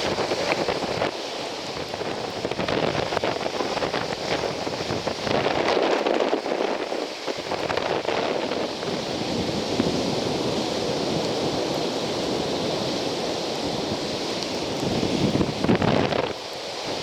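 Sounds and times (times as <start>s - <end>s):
sea surf rushing: 0.0s - 17.0s
wind buffeting microphone: 0.0s - 17.0s.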